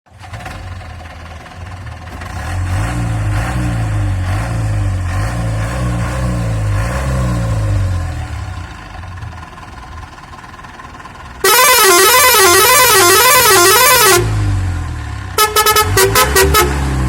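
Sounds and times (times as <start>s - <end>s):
van engine revving: 0.1s - 17.0s.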